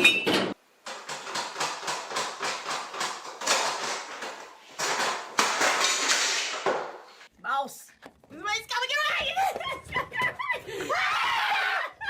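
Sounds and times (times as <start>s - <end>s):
rapid knocking of hard objects: 0.9s - 7.0s.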